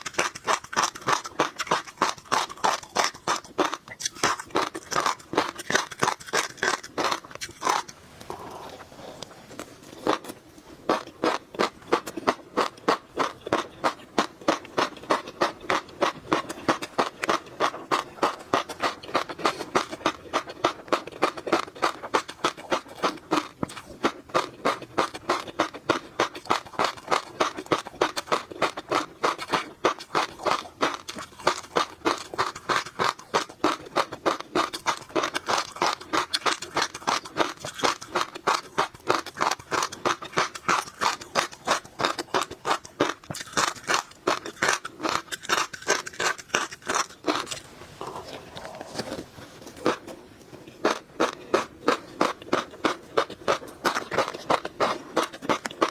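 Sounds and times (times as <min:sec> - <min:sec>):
chewing crunchy fish roe: 0:00.0 - 0:55.9.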